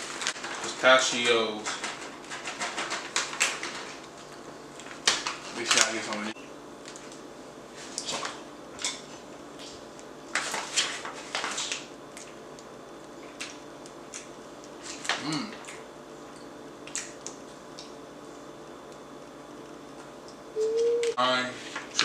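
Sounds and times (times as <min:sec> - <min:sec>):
snack packaging crinkling: 0:00.0 - 0:06.2.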